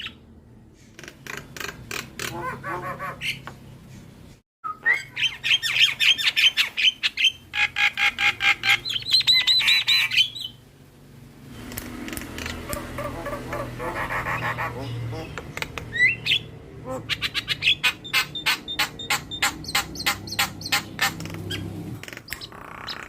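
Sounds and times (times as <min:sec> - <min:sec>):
bird chattering: 0:01.0 - 0:03.5, 0:04.7 - 0:10.6, 0:12.1 - 0:23.0
bird harsh repeated notes: 0:12.2 - 0:23.0.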